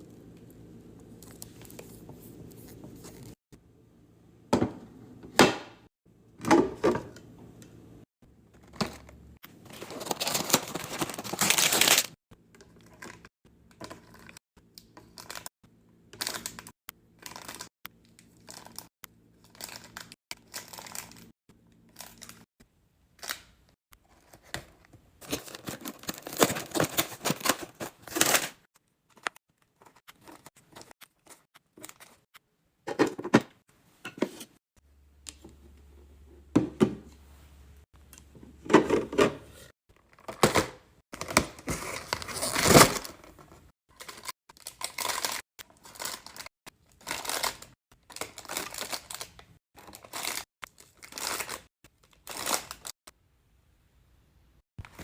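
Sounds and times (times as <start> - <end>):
items being set down: 4.5 - 5.6, 32.9 - 34.5, 38.4 - 40.8
plastic packaging crinkling: 9.6 - 12.2, 16.2 - 21.3, 25.2 - 28.6, 44.0 - 52.9.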